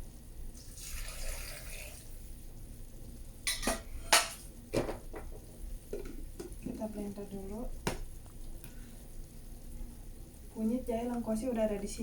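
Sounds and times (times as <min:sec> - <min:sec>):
kitchenware knocking and clinking: 0:03.5 - 0:06.5.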